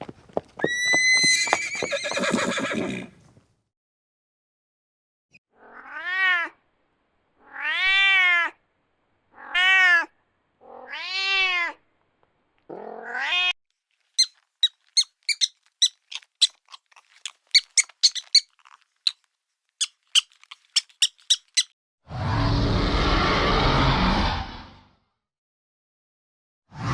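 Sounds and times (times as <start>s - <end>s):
animal crying: 0.6s - 3.1s, 15.0s - 18.8s
high-pitched chirps: 14.2s - 18.6s, 19.8s - 21.7s.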